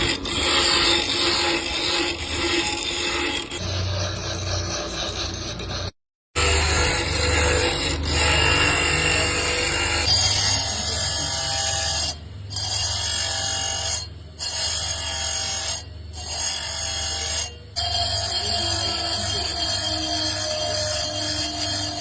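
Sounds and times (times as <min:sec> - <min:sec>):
electric motor hum: 0:00.0 - 0:12.2
grinding on shell: 0:00.0 - 0:22.0
rasping scrape: 0:00.0 - 0:22.0.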